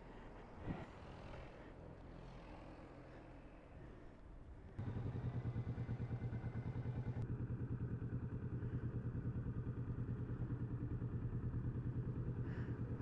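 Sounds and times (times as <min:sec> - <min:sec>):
motorcycle engine running: 0:04.8 - 0:13.0.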